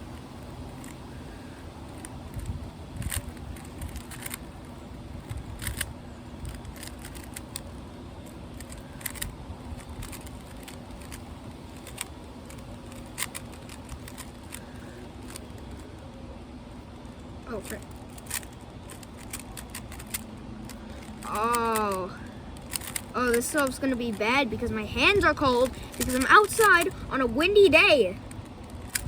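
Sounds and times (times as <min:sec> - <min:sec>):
puzzle cube clicking: 0:01.9 - 0:16.2, 0:17.1 - 0:29.0
wind on microphone: 0:02.2 - 0:04.1.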